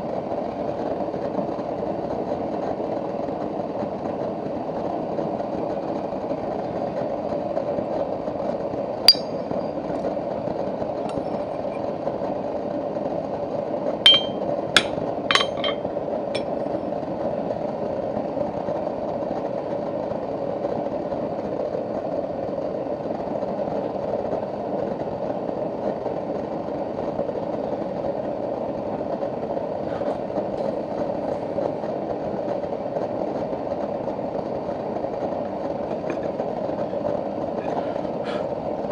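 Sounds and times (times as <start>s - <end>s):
steady rushing hum: 9.0s - 12.1s, 14.1s - 16.7s
steel tools clinking: 9.1s - 9.5s, 14.1s - 15.8s.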